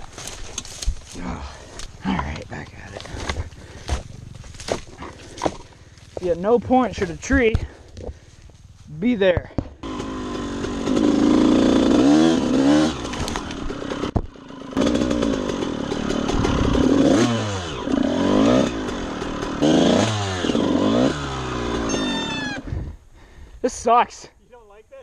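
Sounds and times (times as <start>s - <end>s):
dirt bike engine revving: 9.8s - 22.9s.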